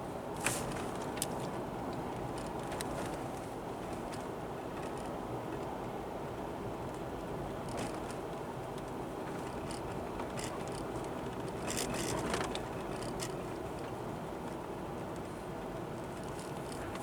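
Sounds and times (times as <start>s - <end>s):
car road and engine noise: 0.0s - 17.0s
light ticks and rattles: 6.8s - 17.0s.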